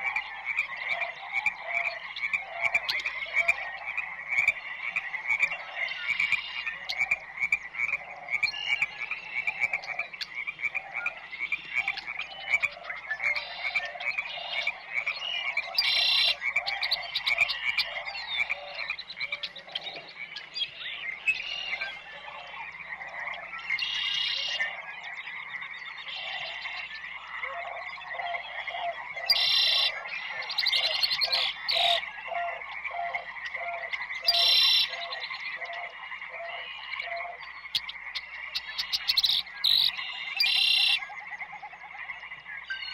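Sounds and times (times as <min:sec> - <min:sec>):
lower frog croaks: 0:00.0 - 0:42.7
chorus of frogs trilling: 0:00.0 - 0:42.9
sharp frog call: 0:10.4 - 0:19.4, 0:38.5 - 0:41.0.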